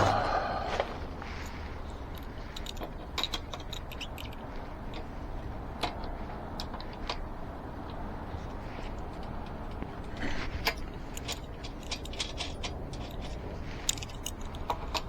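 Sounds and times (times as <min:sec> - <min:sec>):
low background hum: 0:00.0 - 0:15.0
hand tools clicking on metal: 0:01.4 - 0:05.1, 0:09.1 - 0:15.0.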